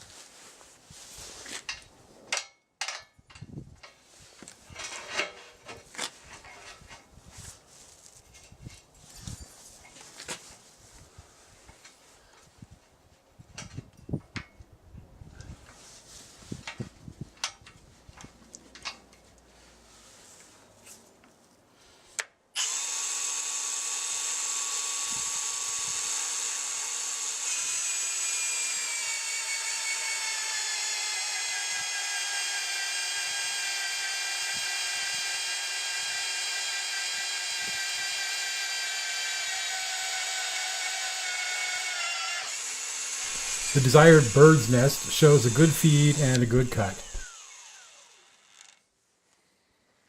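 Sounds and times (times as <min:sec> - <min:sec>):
magnetic drill cutting steel: 0:22.6 - 0:48.8.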